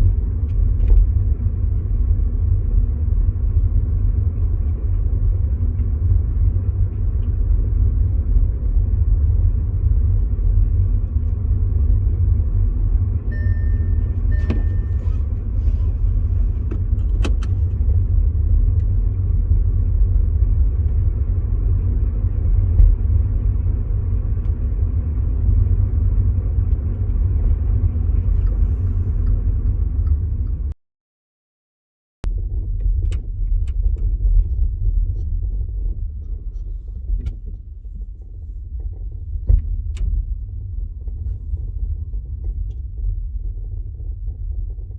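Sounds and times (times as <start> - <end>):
car driving low rumble: 0.0 - 30.8, 32.2 - 44.9
two-part beep: 13.3 - 15.1.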